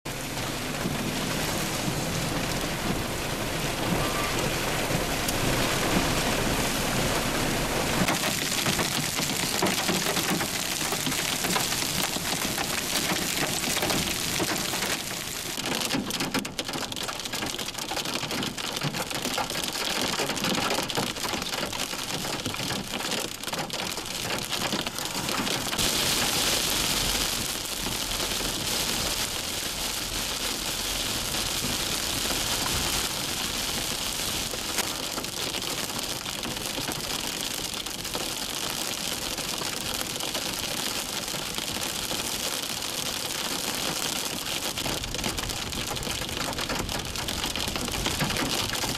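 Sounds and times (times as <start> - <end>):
heavy hail and rain clattering: 0.1 - 48.9.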